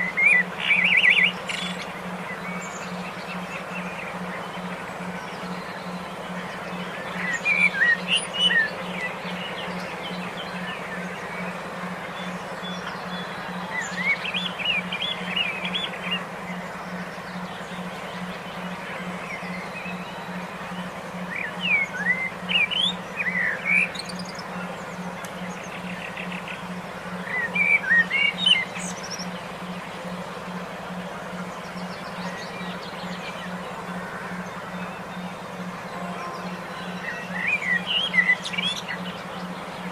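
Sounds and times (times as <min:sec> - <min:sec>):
songbird whistling: 0:00.0 - 0:03.0, 0:35.9 - 0:39.3
pulsing low hum: 0:00.0 - 0:39.9
songbirds chirping: 0:00.0 - 0:39.9.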